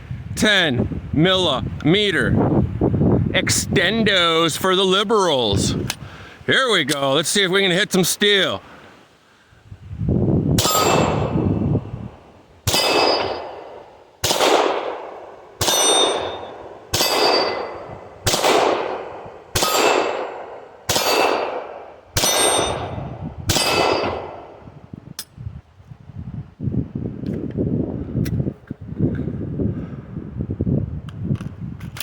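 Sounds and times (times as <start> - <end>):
steel target clanging: 10.6 - 11.2, 12.7 - 13.6, 15.6 - 17.9, 22.2 - 23.0
pistol shots: 10.6 - 11.3, 12.7 - 24.5.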